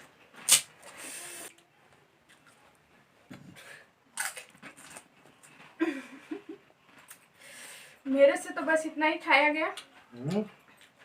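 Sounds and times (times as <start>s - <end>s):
crunching and slurping while eating: 0.0s - 1.6s, 4.1s - 5.8s.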